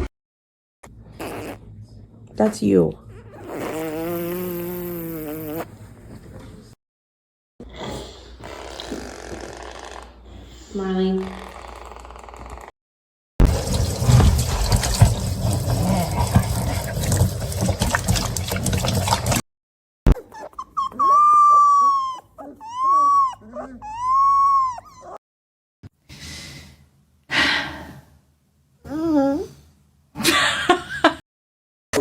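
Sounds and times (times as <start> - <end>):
dog whining: 20.1 - 25.2.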